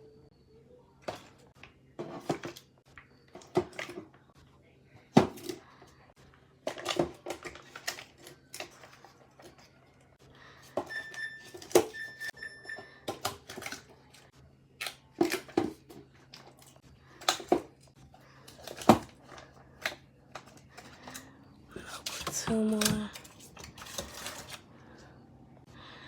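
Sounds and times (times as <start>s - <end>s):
faint low hum: 0.0s - 11.4s, 12.0s - 26.0s
short electronic beep: 10.9s - 13.1s.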